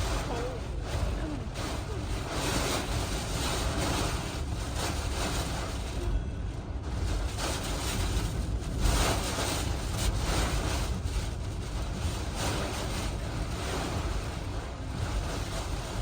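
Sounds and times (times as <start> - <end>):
strong wind buffeting microphone: 0.0 - 16.0.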